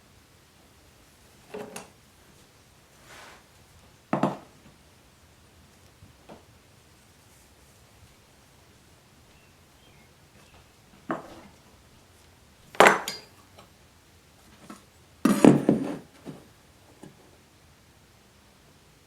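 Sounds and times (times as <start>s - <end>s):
hard objects knocking and clinking: 12.8s - 13.3s.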